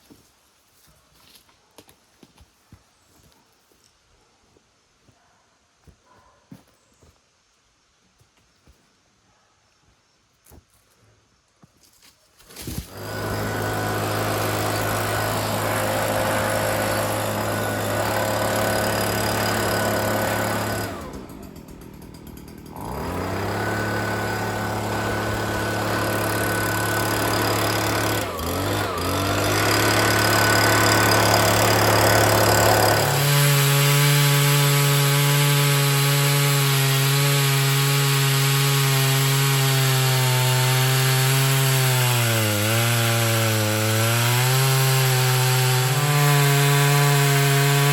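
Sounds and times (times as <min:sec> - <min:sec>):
chainsaw ripping log: 0:12.4 - 0:47.9.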